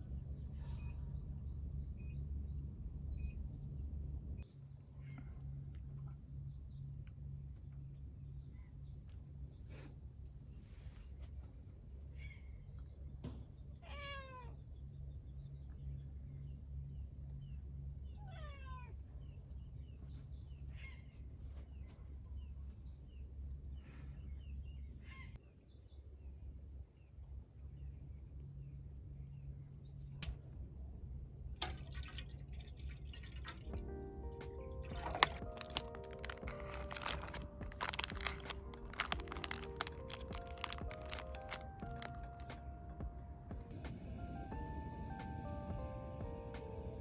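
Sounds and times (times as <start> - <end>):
steady low hum: 0.0 - 13.1, 41.6 - 47.0.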